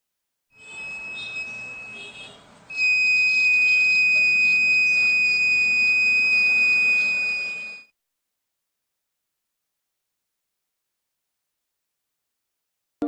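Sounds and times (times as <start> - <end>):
high-pitched alarm buzzer: 0.5 - 7.9.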